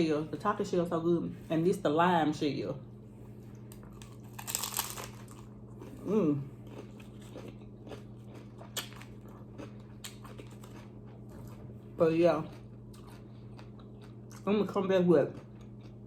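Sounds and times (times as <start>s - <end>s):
chewing with small crunches: 3.3s - 16.0s
crunchy taco shell bite: 3.7s - 6.0s.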